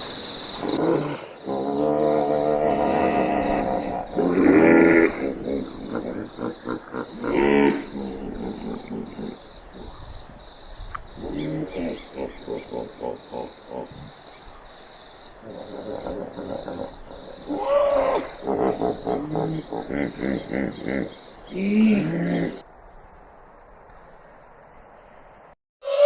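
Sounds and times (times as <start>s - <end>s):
insects chirping: 0.0s - 26.0s
animal calls: 15.4s - 22.6s.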